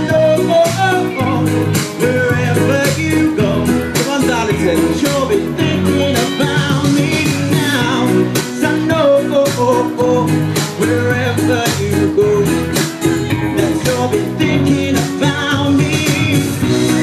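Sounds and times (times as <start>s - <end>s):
person singing over guitar: 0.0s - 17.0s.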